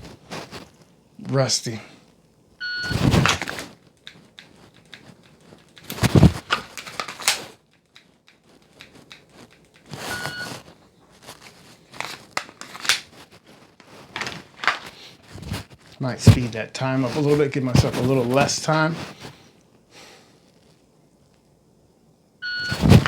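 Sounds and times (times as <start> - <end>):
clothing rustle: 0.0 - 1.4, 2.6 - 3.8, 4.4 - 7.6, 8.6 - 19.6, 22.5 - 23.0
handling clatter: 2.8 - 10.6, 11.2 - 15.6.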